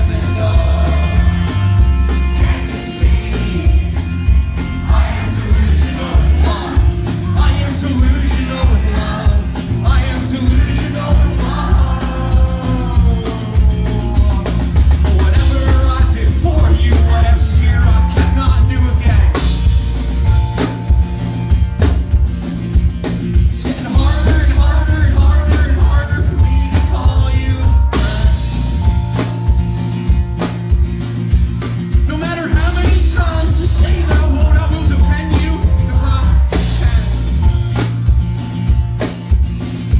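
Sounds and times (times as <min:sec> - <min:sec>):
lead vocal singing: 0:00.0 - 0:19.8, 0:23.4 - 0:28.7, 0:32.0 - 0:37.5
drum kit: 0:00.0 - 0:39.9
live rock band: 0:00.0 - 0:39.9.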